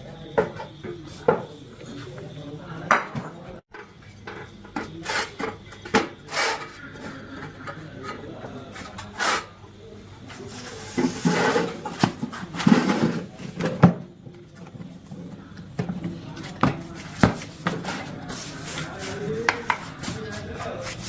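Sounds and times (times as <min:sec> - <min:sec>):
scraping and rubbing: 0:16.8 - 0:21.0.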